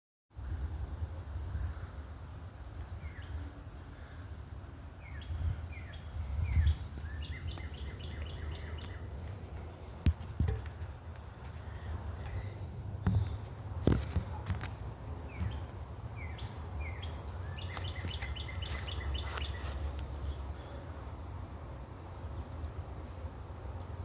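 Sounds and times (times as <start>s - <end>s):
birds chirping: 1.7s - 22.9s.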